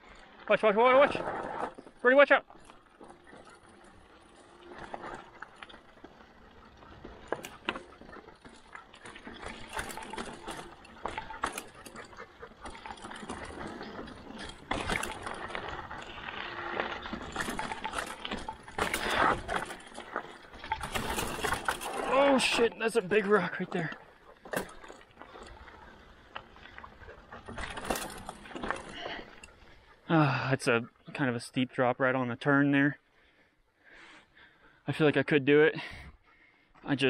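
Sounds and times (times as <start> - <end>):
bike clicking and rattling: 0.0 - 31.8
tyres crunching over gravel: 0.1 - 30.8.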